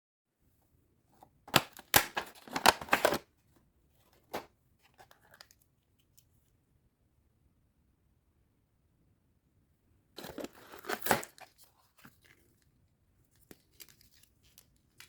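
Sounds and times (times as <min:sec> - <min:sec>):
packaging crinkling and tearing: 0:01.5 - 0:03.2, 0:10.2 - 0:12.5, 0:13.4 - 0:15.0.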